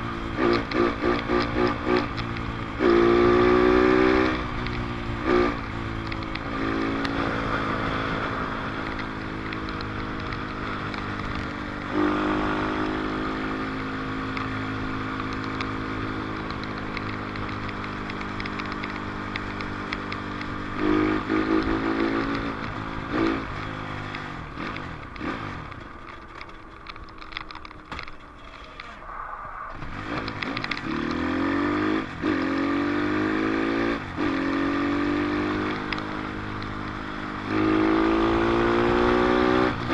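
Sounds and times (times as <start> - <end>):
dirt bike engine revving: 29.7 - 39.9.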